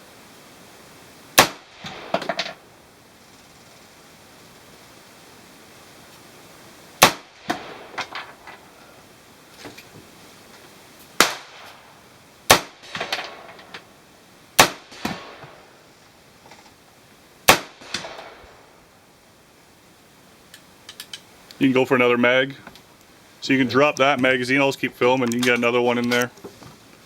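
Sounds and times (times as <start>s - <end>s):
gunshot echoes: 1.4s - 2.6s, 7.0s - 8.0s, 11.2s - 11.9s, 12.5s - 13.5s, 14.6s - 15.7s, 17.5s - 18.6s
rifle shots: 1.4s - 2.6s, 7.0s - 8.4s, 11.2s - 13.8s, 14.6s - 15.7s, 17.5s - 18.7s.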